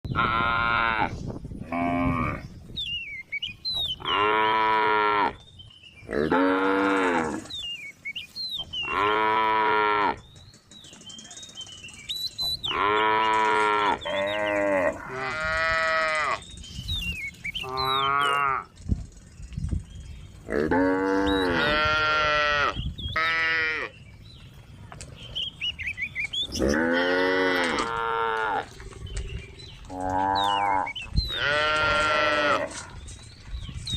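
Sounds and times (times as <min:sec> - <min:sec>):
cows mooing: 0:00.1 - 0:02.5, 0:04.0 - 0:05.4, 0:06.1 - 0:07.5, 0:08.8 - 0:10.2, 0:12.7 - 0:16.4, 0:17.6 - 0:18.7, 0:20.5 - 0:23.9, 0:26.5 - 0:28.8, 0:29.9 - 0:32.9.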